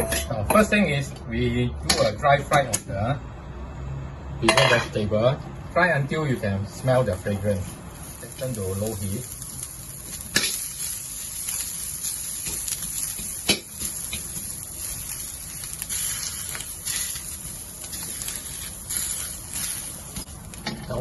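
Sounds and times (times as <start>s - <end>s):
vegetable sizzling in a pan: 6.9s - 21.0s.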